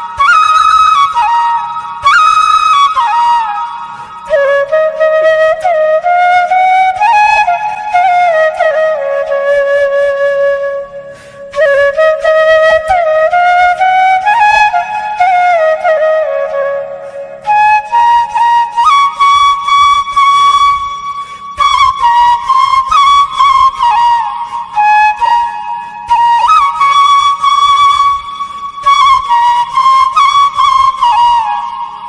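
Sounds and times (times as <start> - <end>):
flute melody: 0.0 - 32.0.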